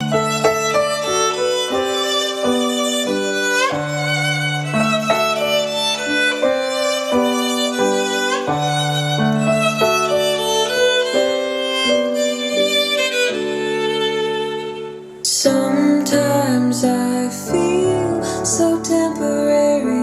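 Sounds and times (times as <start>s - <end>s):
violin held notes: 0.0s - 15.4s.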